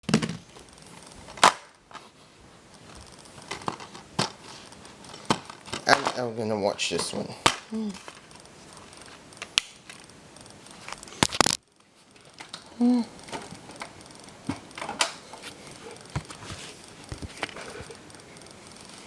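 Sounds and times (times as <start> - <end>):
plastic case clicks and rustles: 3.4 - 4.4.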